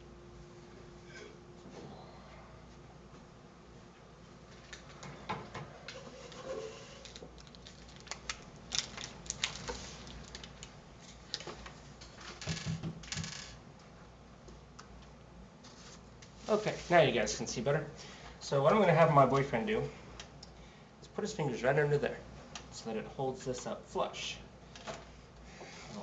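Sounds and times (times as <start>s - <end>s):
computer parts clicking and rattling: 7.0s - 10.7s.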